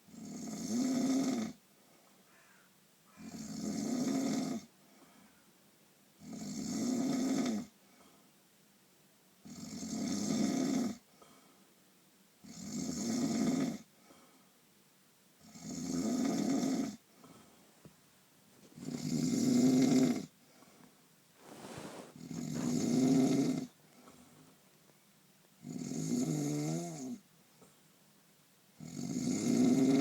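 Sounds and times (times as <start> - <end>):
quiet breaths: 1.7 - 5.8, 7.2 - 8.5, 10.6 - 11.9, 13.3 - 14.8, 15.6 - 28.0
person snoring: 21.4 - 23.8.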